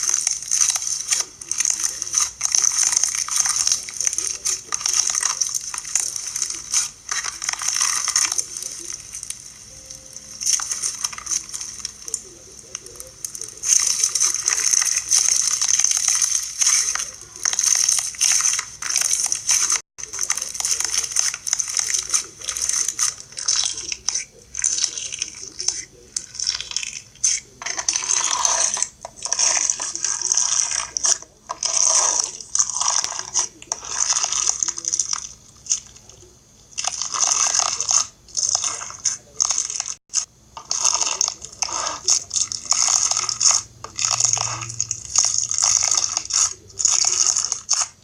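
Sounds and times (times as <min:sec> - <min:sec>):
bead slime crunching and crackling: 0:00.0 - 0:48.0.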